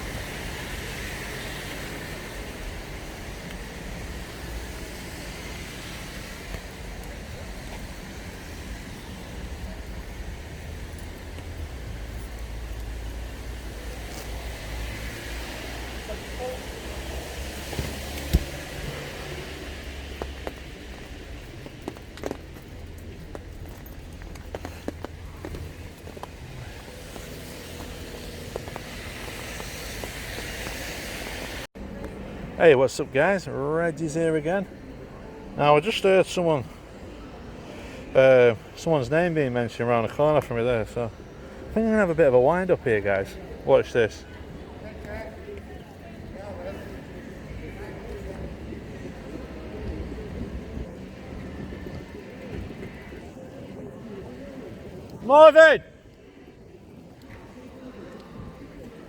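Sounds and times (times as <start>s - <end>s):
tyre hiss on wet road: 0.0s - 21.1s, 26.5s - 31.7s
traffic rumble: 0.0s - 59.0s.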